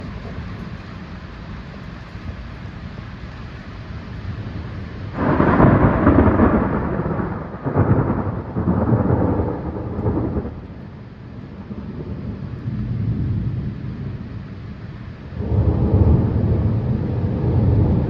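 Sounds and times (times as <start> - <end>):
rolling thunder: 4.3 - 18.0.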